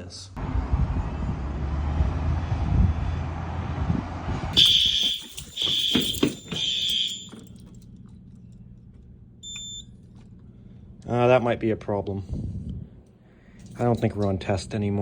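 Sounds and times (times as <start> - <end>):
fire alarm horn: 4.6 - 7.5.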